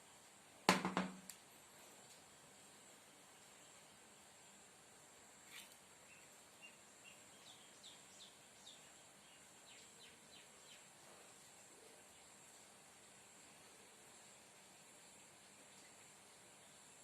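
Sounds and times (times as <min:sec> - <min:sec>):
faint bird chirps: 0:05.4 - 0:12.5.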